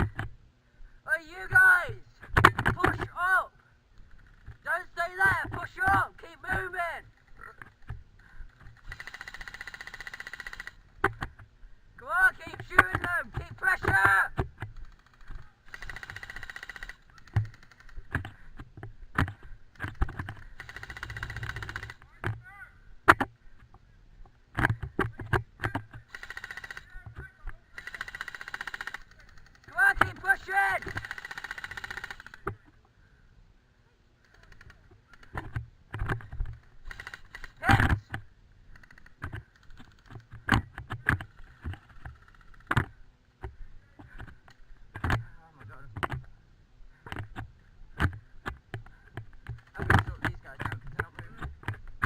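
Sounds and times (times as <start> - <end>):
airsoft rifle full-auto burst: 8.5 - 11.0, 14.8 - 18.1, 19.8 - 22.0, 26.1 - 27.0, 27.7 - 32.5, 34.2 - 35.4, 36.7 - 37.9, 38.7 - 40.2, 41.3 - 42.7.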